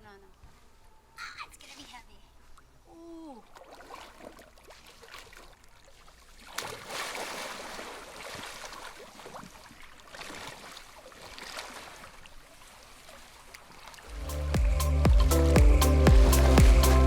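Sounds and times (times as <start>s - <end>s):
pool water sloshing and lapping: 1.7s - 17.0s
splash into water: 3.4s - 14.1s.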